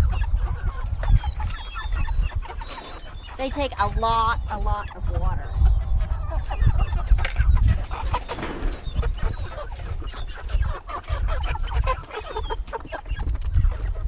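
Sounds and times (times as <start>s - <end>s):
chickens peeping and clucking: 0.0s - 14.0s
low rumble: 3.3s - 10.0s.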